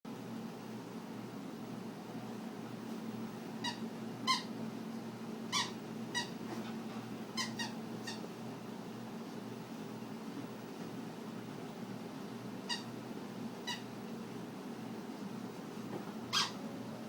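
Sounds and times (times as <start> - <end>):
steady low hum: 0.1 - 17.0
squeaky toy squeaks: 3.6 - 4.5, 5.5 - 6.3, 7.4 - 8.2, 12.7 - 12.9, 16.3 - 16.6.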